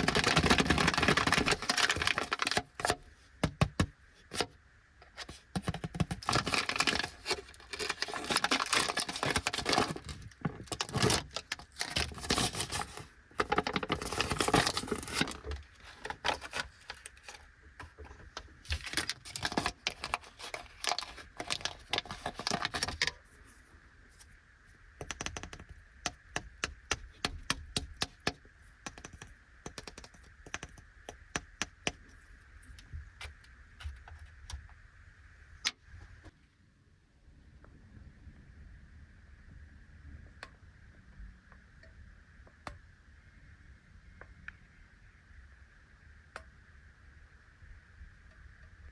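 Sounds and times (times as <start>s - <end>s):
plastic wrapper crinkling and tearing: 0.0s - 3.0s, 6.0s - 17.5s, 18.5s - 23.2s.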